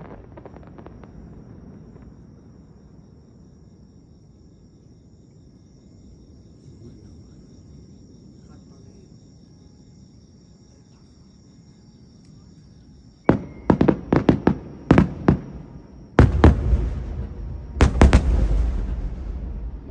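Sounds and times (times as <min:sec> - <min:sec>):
fireworks bangs: 0:00.0 - 0:04.1, 0:13.2 - 0:19.9
fireworks bursts with rolling rumble: 0:00.0 - 0:09.2, 0:13.2 - 0:19.9
insects chirring: 0:00.0 - 0:19.9.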